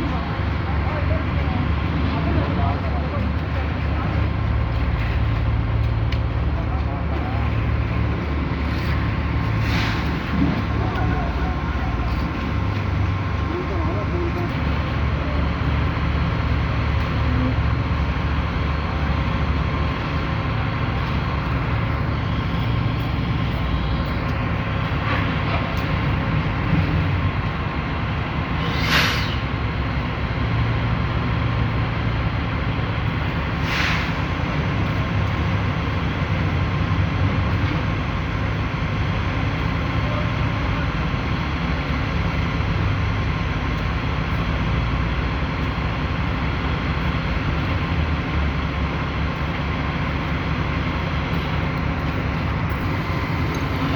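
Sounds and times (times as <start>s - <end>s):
diesel engine rumbling: 0.0s - 53.9s
short hisses: 28.6s - 29.5s, 33.6s - 34.2s.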